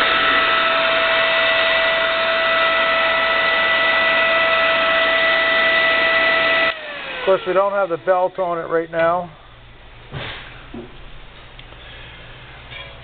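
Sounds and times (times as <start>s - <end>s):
grinder motor high whine: 0.0s - 8.0s.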